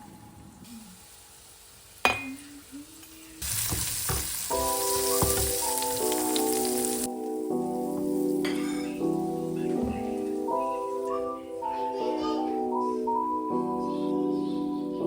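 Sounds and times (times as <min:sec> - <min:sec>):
food frying with loud sizzle: 0:00.4 - 0:12.2
background music with steady tones: 0:04.1 - 0:15.0.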